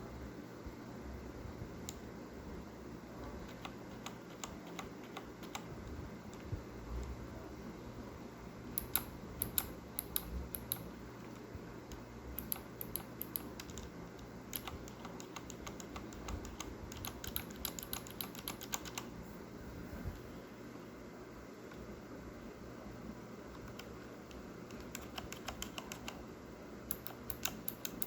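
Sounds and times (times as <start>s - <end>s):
mechanical keyboard key clicks: 8.8s - 10.9s, 11.9s - 13.9s, 14.5s - 19.1s, 23.6s - 26.2s, 26.9s - 28.0s.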